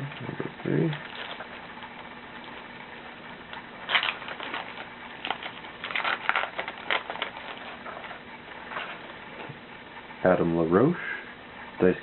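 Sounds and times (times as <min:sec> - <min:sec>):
foil wrapper tearing and crinkling: 0:03.9 - 0:07.9.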